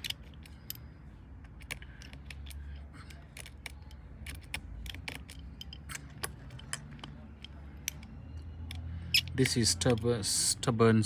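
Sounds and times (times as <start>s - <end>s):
screwdriver clicks and ticks: 1.4s - 10.1s.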